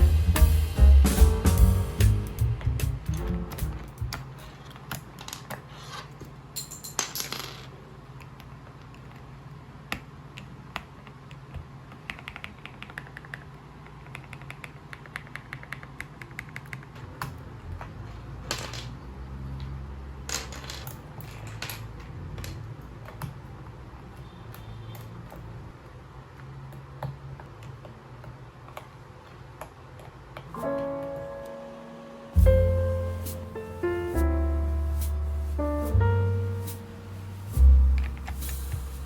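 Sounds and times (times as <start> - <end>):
keyboard keycaps clicking: 2.4 - 5.6, 8.2 - 17.5
steady low hum: 32.1 - 39.0.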